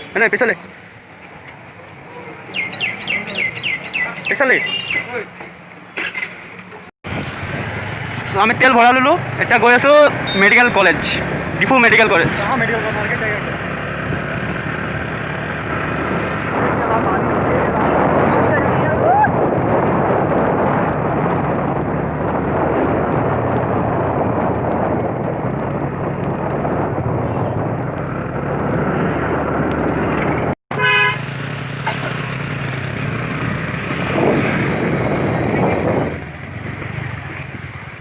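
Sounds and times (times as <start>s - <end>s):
road noise: 0.0s - 38.0s
vehicle horn honk: 30.7s - 31.2s.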